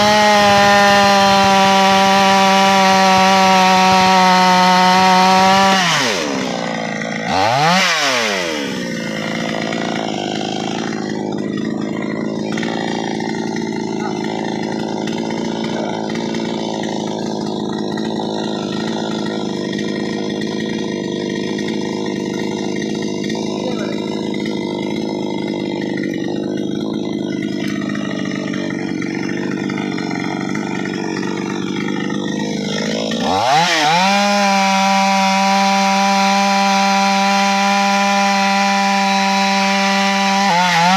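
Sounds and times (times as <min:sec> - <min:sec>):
chainsaw engine revving: 0:00.0 - 0:40.9.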